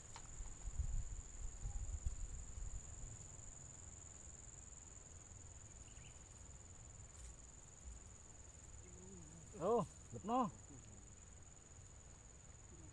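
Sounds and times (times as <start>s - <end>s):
insects chirring: 0.0s - 12.9s
wind noise on microphone: 0.4s - 2.9s.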